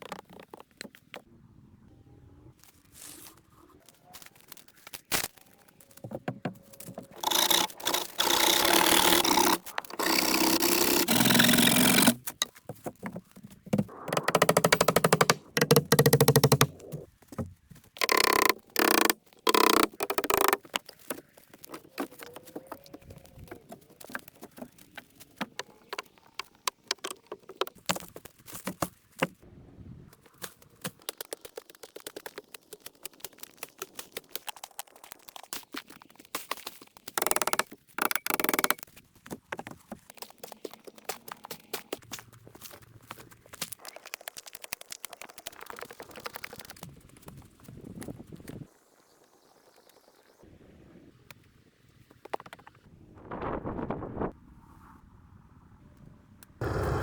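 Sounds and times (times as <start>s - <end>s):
scattered knocks and clicks: 6.1s - 22.9s, 37.2s - 38.8s
loud scraping bursts: 7.1s - 12.3s.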